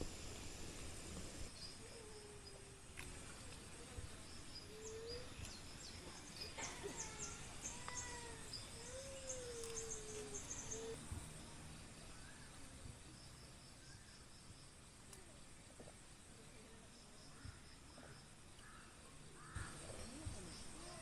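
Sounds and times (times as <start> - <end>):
wavering low animal calls: 1.7 - 11.2
faint clicks: 2.9 - 3.6.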